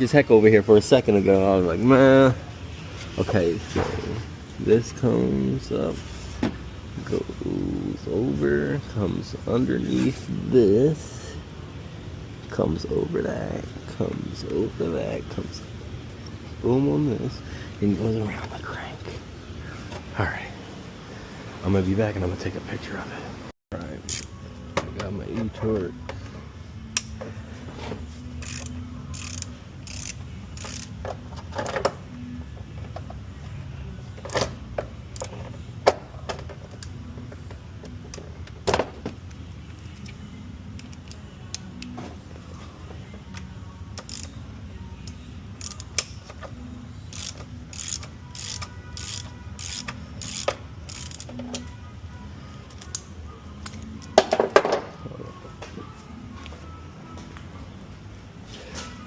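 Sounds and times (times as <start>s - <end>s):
low background hum: 0.0s - 59.0s
ratchet clicks: 24.0s - 24.3s, 28.4s - 31.1s, 44.0s - 44.4s, 45.0s - 46.2s, 47.1s - 51.7s.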